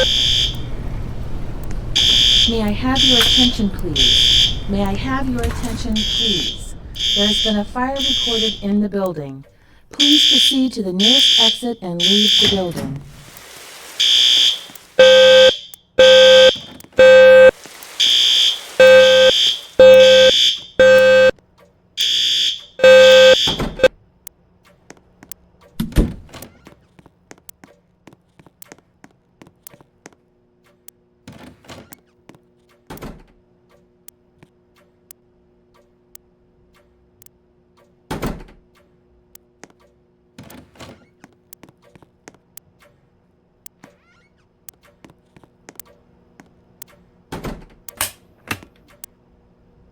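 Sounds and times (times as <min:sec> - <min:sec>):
pulsing fire alarm tone: 0:00.0 - 0:01.2, 0:01.9 - 0:08.8, 0:10.0 - 0:12.8, 0:14.0 - 0:21.4, 0:22.0 - 0:23.9.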